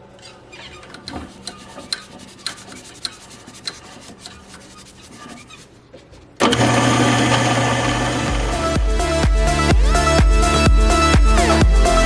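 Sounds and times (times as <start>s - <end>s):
light rubbing and clicks: 0.2s - 6.4s
wood lathe humming: 6.4s - 10.1s
loud electronic music: 7.8s - 12.0s.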